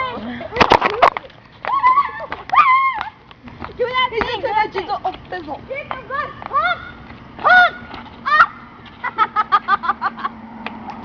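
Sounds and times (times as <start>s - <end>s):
young person squealing: 6.5s - 8.6s.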